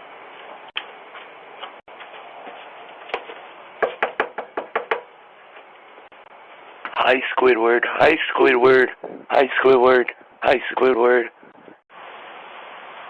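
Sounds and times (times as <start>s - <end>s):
knocking on a door: 3.8s - 5.1s.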